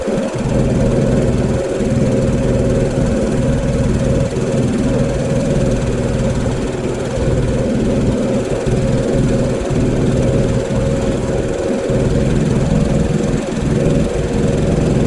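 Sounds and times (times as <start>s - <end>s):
pressure washer engine running: 0.0s - 15.0s.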